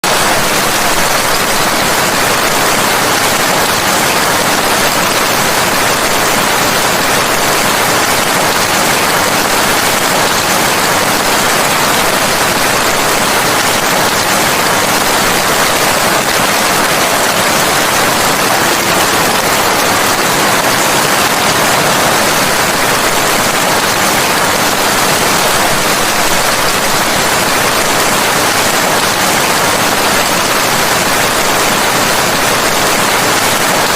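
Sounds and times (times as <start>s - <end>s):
steady rainfall hiss: 0.0s - 33.9s.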